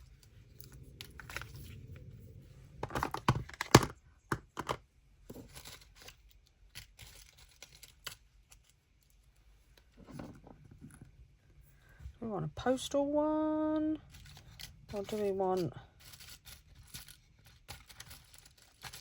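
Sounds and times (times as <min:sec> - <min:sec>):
paper rustling and crinkling: 0:14.0 - 0:19.0.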